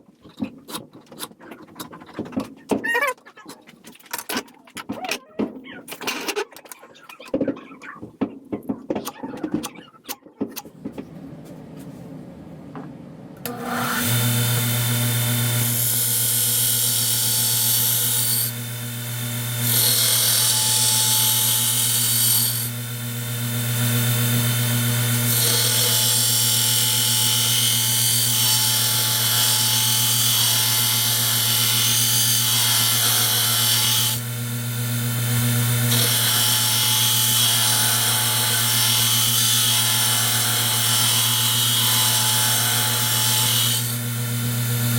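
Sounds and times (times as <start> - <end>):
electric grinder humming: 13.4 - 44.9.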